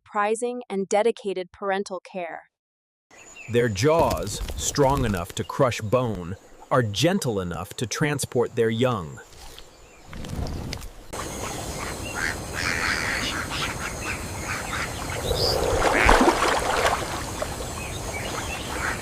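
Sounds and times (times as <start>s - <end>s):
noisy outdoor background: 3.1s - 19.0s
animal calls: 11.2s - 16.6s.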